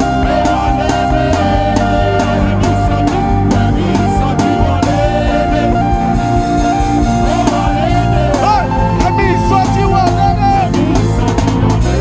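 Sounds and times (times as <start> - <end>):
people singing: 0.0 - 12.0
worship band music: 0.0 - 12.0.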